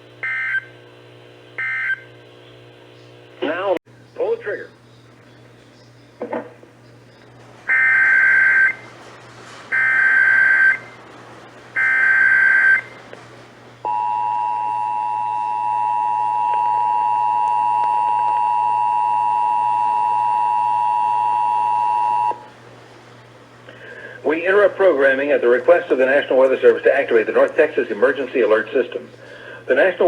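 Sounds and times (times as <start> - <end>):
two-tone attention signal: 9.7 - 11.0, 13.8 - 22.5.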